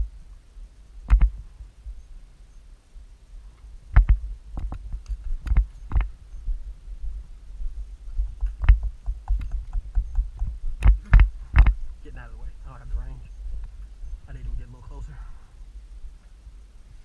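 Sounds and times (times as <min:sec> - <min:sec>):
sharp clicks: 0:01.1 - 0:01.4, 0:08.4 - 0:11.8
dull thumps: 0:08.2 - 0:11.8.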